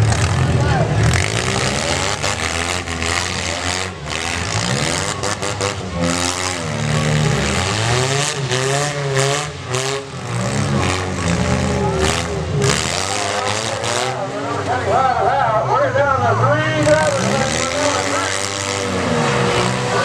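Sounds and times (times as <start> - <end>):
car engines revving hard: 0.0 - 20.0.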